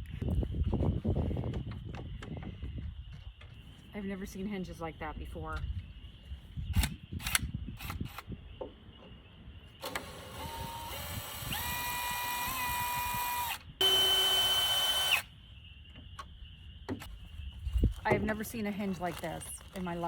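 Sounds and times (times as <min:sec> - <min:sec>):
sharp clicks: 0:06.8 - 0:08.3
power drill whining: 0:09.8 - 0:15.3.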